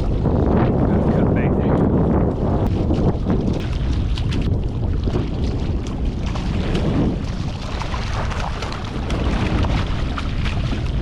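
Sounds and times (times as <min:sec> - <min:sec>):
wind buffeting microphone: 0:00.0 - 0:11.0
small water splashes: 0:02.6 - 0:11.0.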